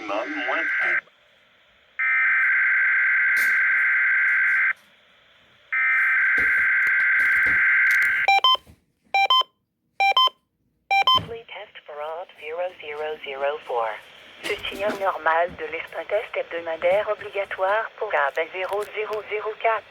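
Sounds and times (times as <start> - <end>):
short electronic beeps: 8.2 - 8.6, 9.2 - 11.2.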